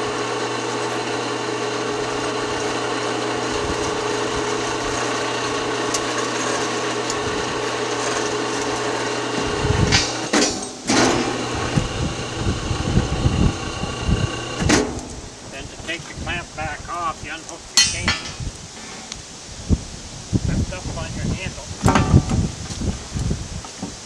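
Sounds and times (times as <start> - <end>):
electric hoist motor humming: 0.0 - 18.7
steel chain clanking: 17.7 - 18.5.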